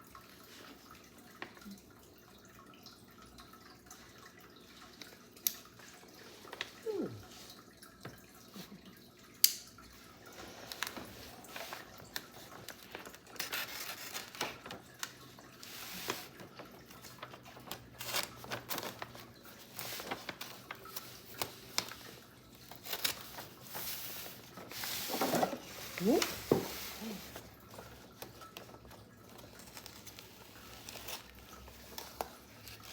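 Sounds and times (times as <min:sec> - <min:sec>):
packaging rustling: 0:10.5 - 0:32.9.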